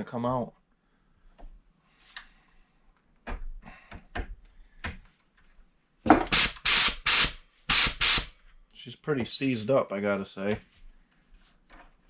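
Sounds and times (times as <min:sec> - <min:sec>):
compressed air hiss: 0:06.3 - 0:08.4.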